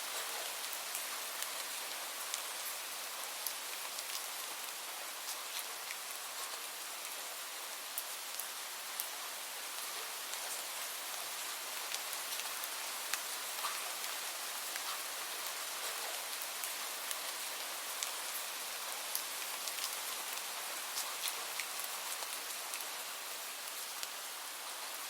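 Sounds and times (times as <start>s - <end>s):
light rain hissing: 0.0s - 25.0s
raindrops ticking on a surface: 0.1s - 25.0s.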